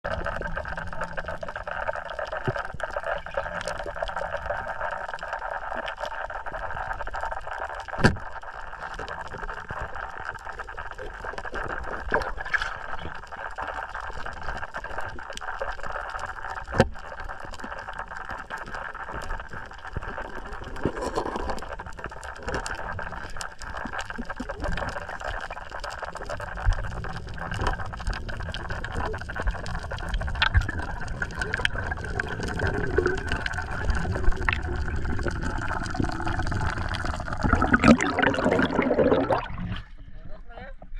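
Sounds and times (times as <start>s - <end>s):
fine crackle: 0.2s - 37.5s
water rushing: 27.2s - 39.8s.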